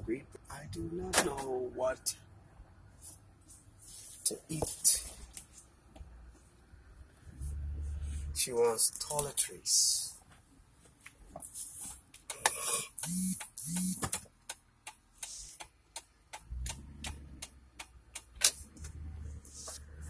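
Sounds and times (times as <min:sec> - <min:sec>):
low steady rumble: 0:00.0 - 0:10.8.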